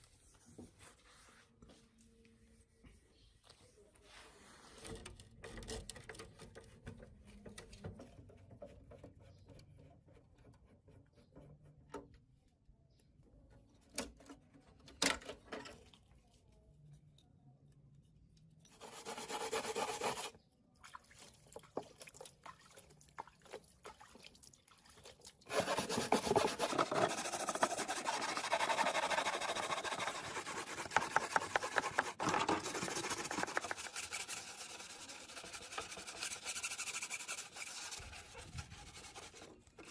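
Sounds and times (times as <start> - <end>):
hand scrubbing a hard surface: 18.8 - 20.3, 25.5 - 39.9.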